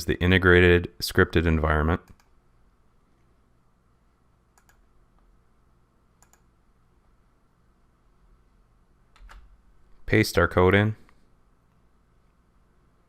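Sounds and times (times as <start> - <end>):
faint computer mouse clicks: 4.6 - 4.8, 6.2 - 6.5.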